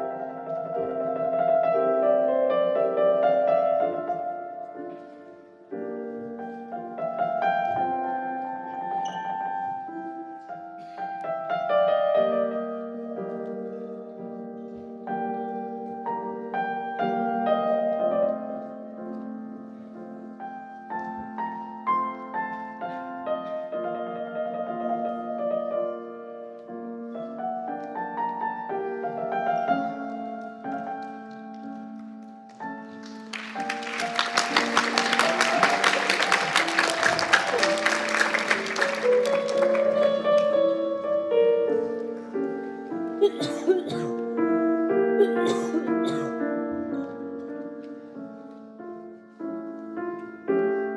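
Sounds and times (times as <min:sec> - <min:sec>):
piano music: 0:00.0 - 0:50.9
applause: 0:32.5 - 0:40.6.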